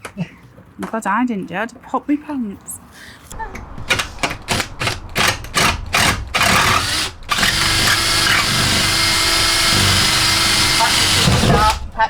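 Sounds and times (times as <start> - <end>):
power tool undoing bolt: 3.9 - 11.9.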